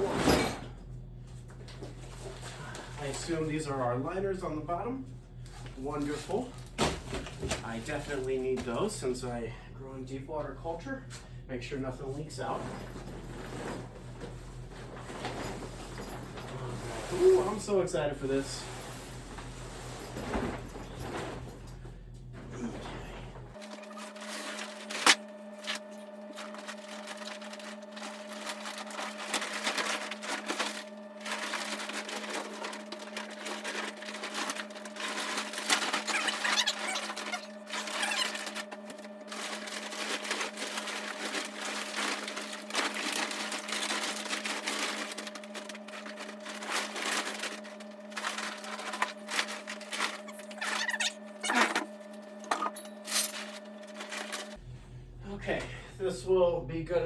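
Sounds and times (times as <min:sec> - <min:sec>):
steady low hum: 0:00.0 - 0:57.0
canvas and plastic rustling: 0:12.4 - 0:21.5, 0:23.5 - 0:51.8.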